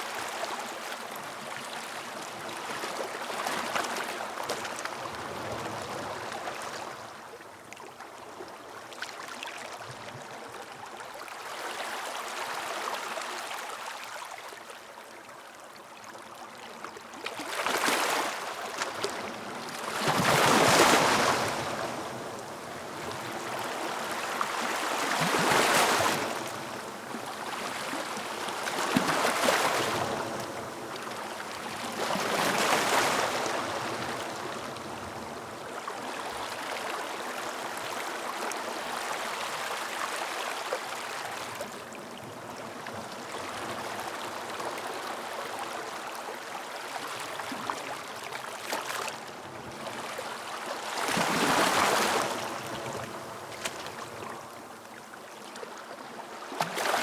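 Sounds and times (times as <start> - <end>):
sea waves breaking on a beach: 17.3 - 57.0.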